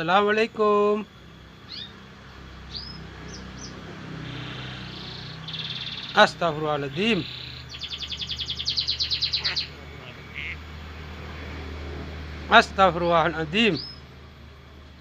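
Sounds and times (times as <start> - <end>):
lory chirping: 0.8 - 10.7, 12.8 - 14.1
bird mimicking speech: 5.6 - 8.0, 8.7 - 10.6, 12.5 - 14.0.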